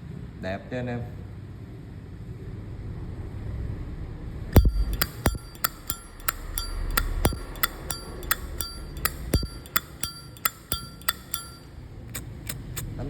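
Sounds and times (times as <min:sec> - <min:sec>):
lighter lid clicking: 0:04.8 - 0:12.9.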